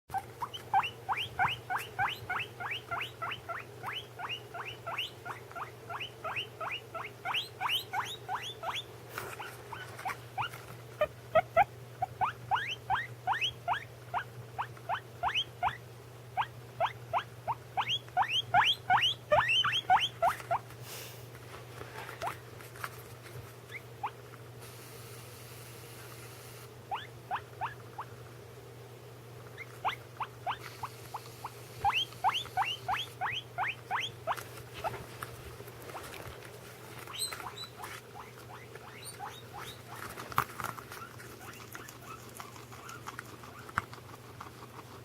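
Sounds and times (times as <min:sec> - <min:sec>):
guinea pig squeaking: 0:00.1 - 0:20.7, 0:23.7 - 0:24.2, 0:26.9 - 0:28.2, 0:29.5 - 0:35.0, 0:37.0 - 0:45.0.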